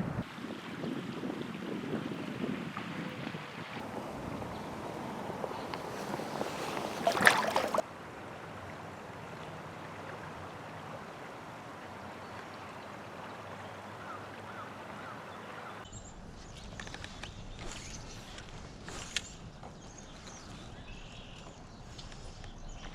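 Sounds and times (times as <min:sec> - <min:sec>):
river water flowing: 0:00.2 - 0:15.9.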